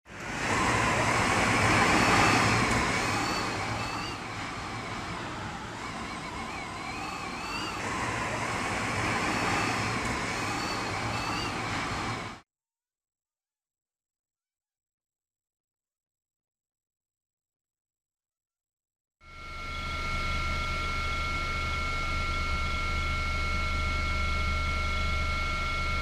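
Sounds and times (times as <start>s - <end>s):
wind roaring: 0.1s - 12.4s
faint high whistle: 0.2s - 12.4s.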